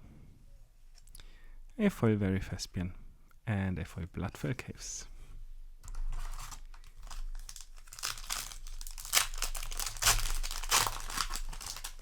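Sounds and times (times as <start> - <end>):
foil wrapper crinkling and tearing: 5.8 - 12.0.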